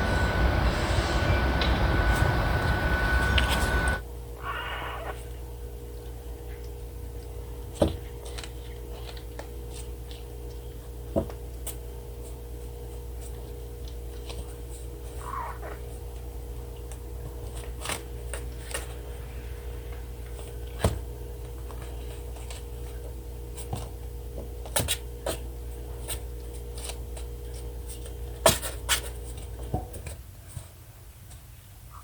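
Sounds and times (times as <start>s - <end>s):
steady low hum: 0.0s - 30.1s
small paws tapping and scrabbling: 6.0s - 19.1s, 20.2s - 31.5s.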